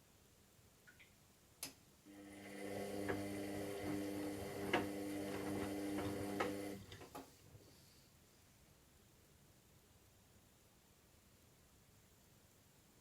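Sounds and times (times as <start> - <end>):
washing machine motor humming: 2.1 - 7.1
washing machine click: 3.0 - 7.1.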